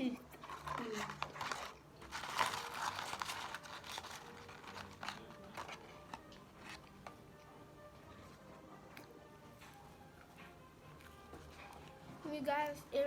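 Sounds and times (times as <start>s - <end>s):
close-up eating noises: 0.0s - 13.0s
food packaging crinkling: 0.3s - 7.2s.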